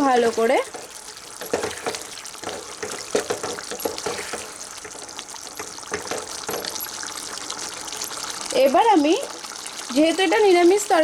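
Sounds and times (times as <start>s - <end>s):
spatula scraping a pan: 0.0s - 7.1s
gravy sloshing in a pan: 0.0s - 11.0s.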